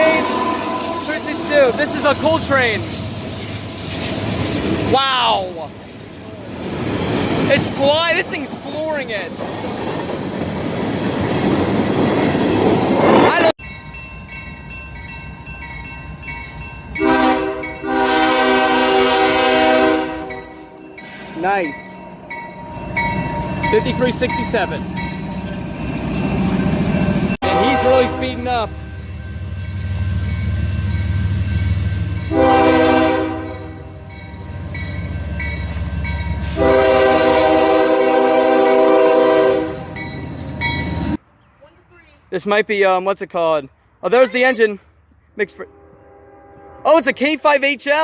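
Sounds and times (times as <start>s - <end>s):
locomotive air horn blasts: 0.0s - 2.2s, 17.0s - 20.5s, 27.4s - 28.8s, 32.3s - 34.0s, 36.4s - 40.0s, 45.6s - 47.0s
passing train rumble: 0.0s - 42.0s.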